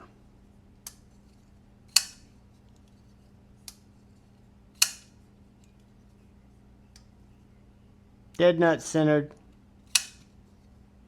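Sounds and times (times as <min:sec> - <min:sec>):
folding knife clicks: 0:01.9 - 0:02.2, 0:04.8 - 0:05.1, 0:09.9 - 0:10.3
knife blade snapping open: 0:01.9 - 0:02.2, 0:09.9 - 0:10.2.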